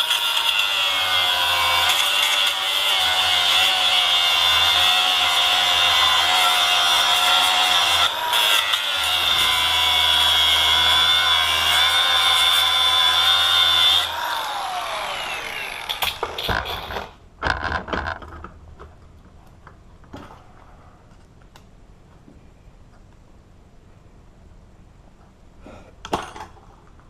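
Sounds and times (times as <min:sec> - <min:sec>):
power tool whining: 0:00.0 - 0:17.0.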